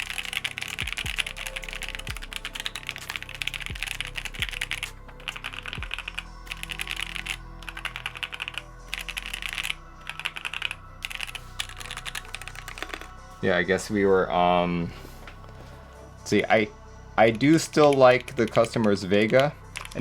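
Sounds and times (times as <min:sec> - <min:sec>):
rapid mechanical keyboard typing: 0:00.0 - 0:13.1, 0:17.3 - 0:20.0.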